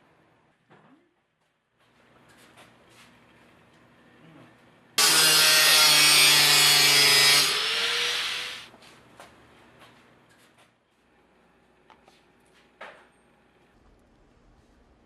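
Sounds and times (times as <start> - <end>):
tool rasping material: 5.0 - 8.7.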